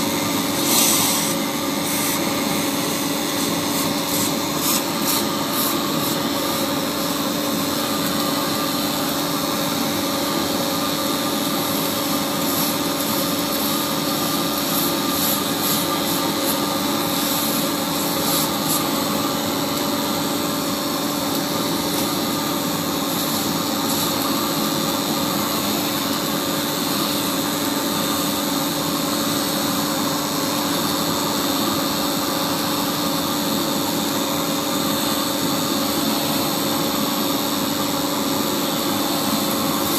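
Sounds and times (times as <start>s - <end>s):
sharp welding crackles: 0.0s - 25.1s
welding machine hum and hiss: 0.0s - 39.9s.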